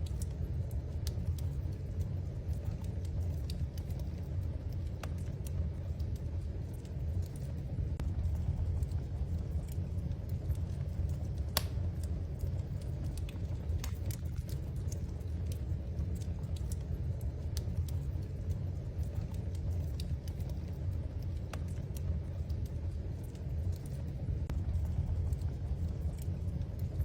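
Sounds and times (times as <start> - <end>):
wood fire crackling: 0.0 - 27.0.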